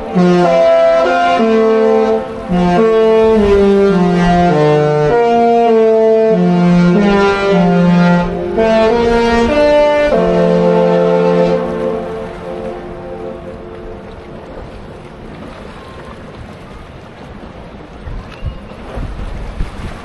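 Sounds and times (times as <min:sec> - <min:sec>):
ship's musical horn playing: 0:00.0 - 0:14.8.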